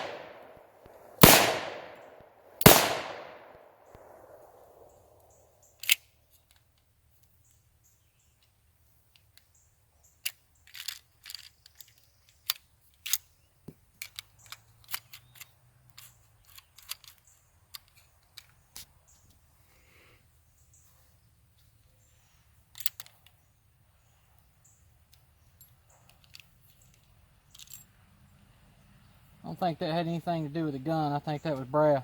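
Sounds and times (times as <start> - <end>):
small sharp clicks: 0.0 - 7.6, 8.4 - 19.4, 22.7 - 23.4.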